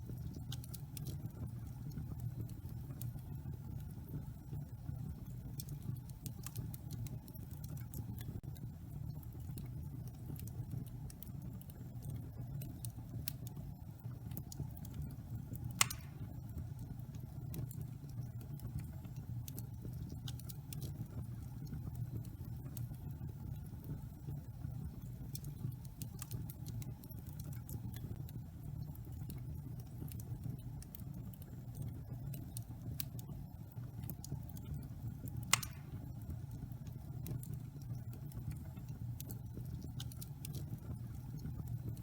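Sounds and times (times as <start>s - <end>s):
fire crackles: 0.0s - 42.0s
fire rumbling: 0.0s - 42.0s
sharp pop from fire: 15.8s - 16.3s, 35.5s - 36.1s.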